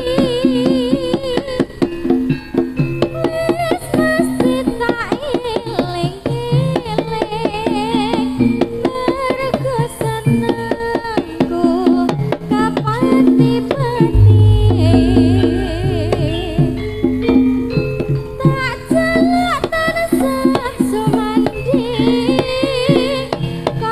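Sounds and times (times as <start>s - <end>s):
deep low note: 14.1s - 18.2s
drum strokes: 14.1s - 18.2s
wavering melody: 14.1s - 18.2s
pitched percussion: 14.1s - 19.0s.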